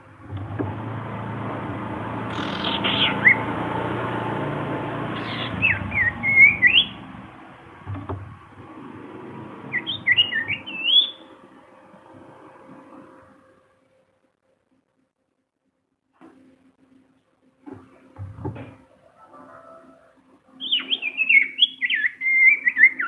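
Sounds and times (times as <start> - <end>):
steady low hum: 0.0 - 13.5
bird whistled calls: 2.3 - 3.7, 5.1 - 7.3, 9.7 - 11.3, 20.6 - 23.0.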